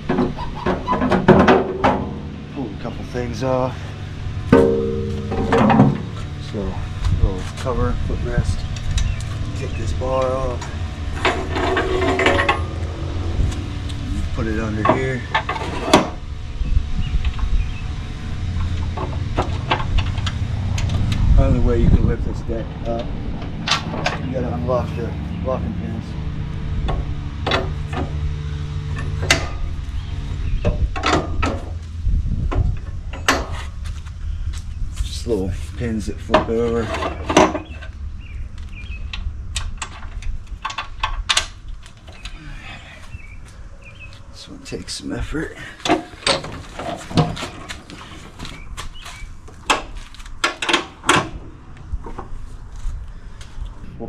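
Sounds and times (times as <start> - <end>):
steady low hum: 0.0 - 54.0
sharp metal clicks and knocks: 10.2 - 13.0, 28.9 - 29.8, 30.6 - 31.9, 38.6 - 42.4, 45.8 - 51.4.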